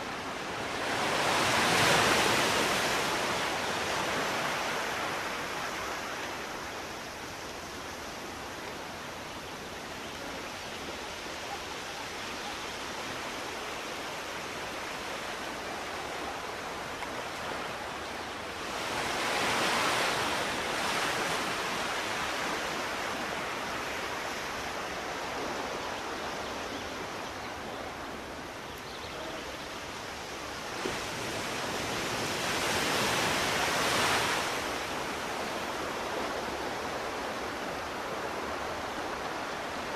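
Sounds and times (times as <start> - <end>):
sea waves washing in: 29.6 - 39.9.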